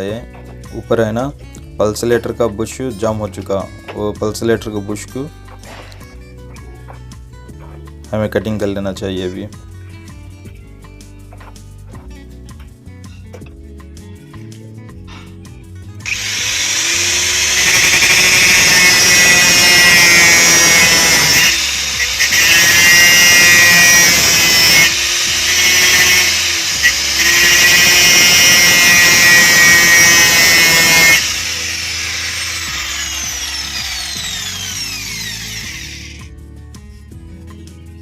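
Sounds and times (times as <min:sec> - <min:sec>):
power tool cutting: 0:16.1 - 0:36.3.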